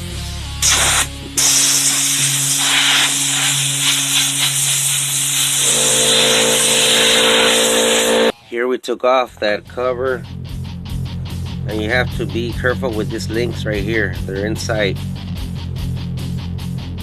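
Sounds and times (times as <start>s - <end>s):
compressed air hissing: 0.6s - 8.3s
background music: 9.4s - 17.0s.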